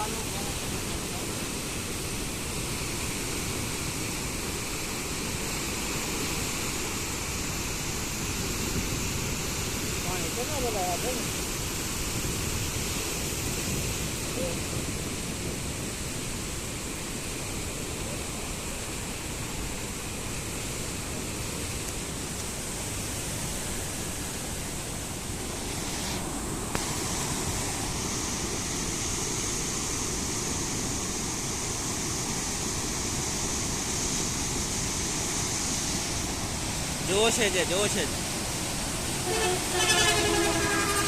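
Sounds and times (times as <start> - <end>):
floodwater rushing: 0.0 - 41.0.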